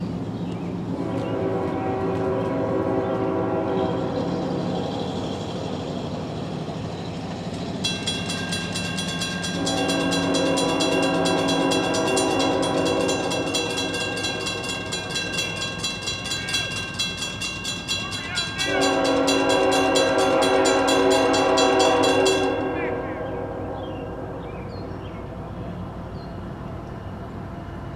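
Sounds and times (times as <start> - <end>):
railroad crossing bells ringing: 0.8 - 27.9
locomotive horn blasts: 0.9 - 5.2, 9.3 - 17.0, 18.0 - 24.6.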